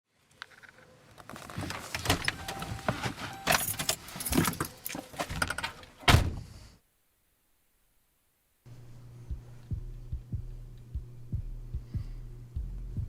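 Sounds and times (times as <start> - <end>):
metal keys jangling: 3.4 - 5.2.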